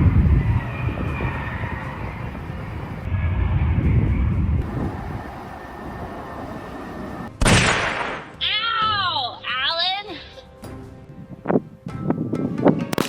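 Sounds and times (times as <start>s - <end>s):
low engine rumble: 0.0s - 7.5s
loud rushing burst: 0.0s - 8.4s.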